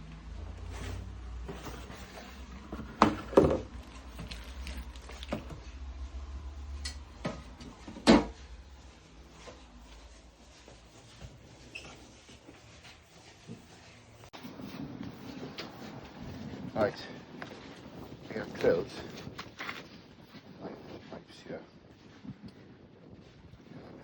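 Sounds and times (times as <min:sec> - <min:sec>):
knocks and clunks: 0:02.6 - 0:05.6, 0:06.9 - 0:08.4
low rumble: 0:03.7 - 0:10.5.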